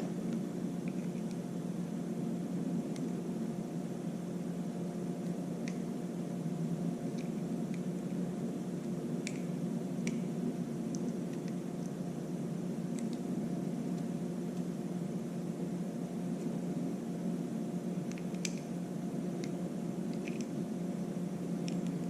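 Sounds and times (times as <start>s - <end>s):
steady low hum: 0.0s - 22.0s
light plastic clicks and handling: 19.4s - 20.5s.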